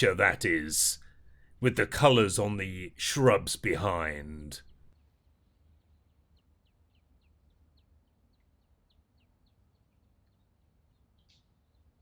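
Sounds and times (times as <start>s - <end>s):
steady low hum: 0.0s - 4.9s.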